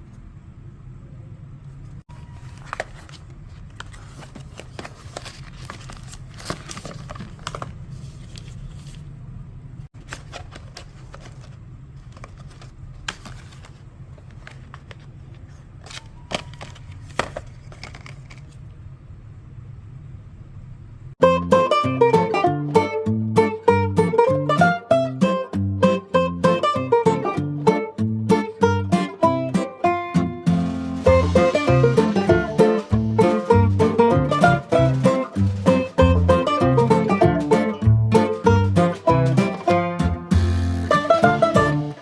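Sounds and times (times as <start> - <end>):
packaging rustling and tearing: 2.3 - 9.0, 10.0 - 18.6.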